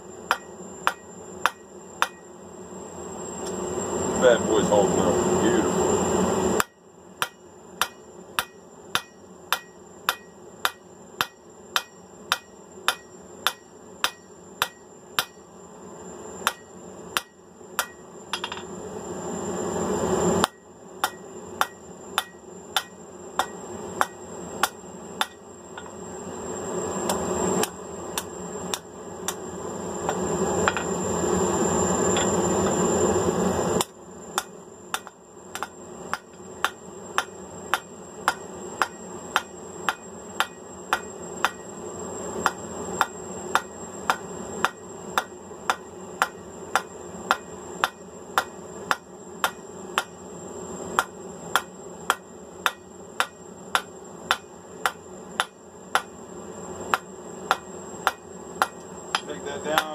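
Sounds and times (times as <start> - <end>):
hammer striking steel on anvil: 0.3 - 2.2, 6.6 - 15.4, 16.4 - 18.7, 20.4 - 25.9, 33.8 - 41.6, 42.4 - 50.1, 51.0 - 56.1, 56.9 - 59.9.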